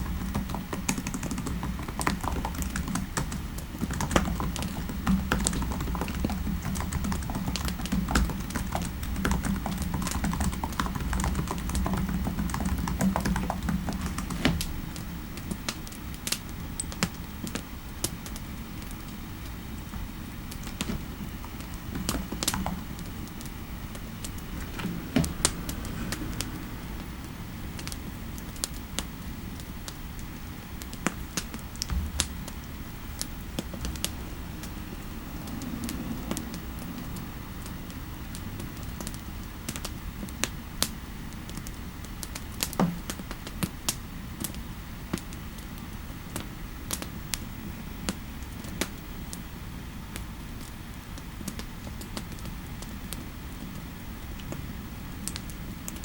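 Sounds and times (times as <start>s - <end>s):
typing on computer keyboard: 0.0s - 14.8s, 21.9s - 23.1s
low background rumble: 20.3s - 40.4s
heavier knock: 31.9s - 34.2s.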